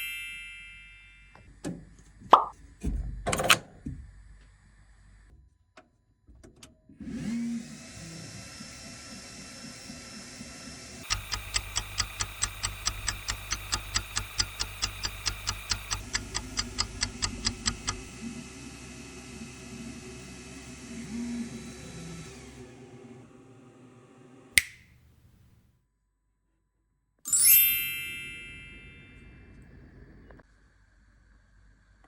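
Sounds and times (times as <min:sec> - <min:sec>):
engraving machine humming: 0:10.8 - 0:22.9
regular mechanical ticking: 0:11.0 - 0:18.1.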